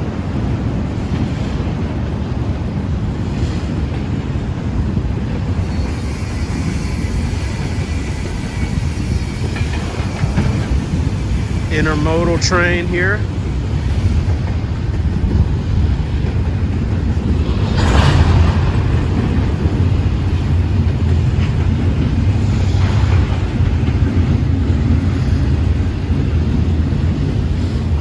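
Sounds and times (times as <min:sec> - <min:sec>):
freight train rumbling past: 0:00.0 - 0:28.0.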